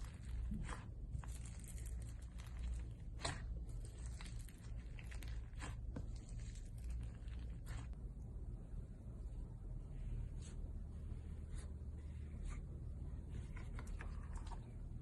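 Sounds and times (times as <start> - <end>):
slime squished by hand: 0.0 - 8.0
low steady hum: 0.0 - 15.0.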